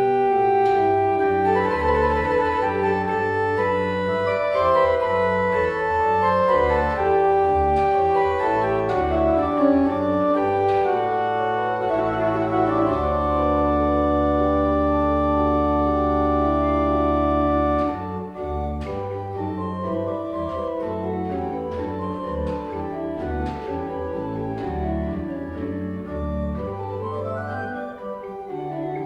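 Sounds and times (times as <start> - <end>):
organ playing slow chords: 0.0 - 29.0.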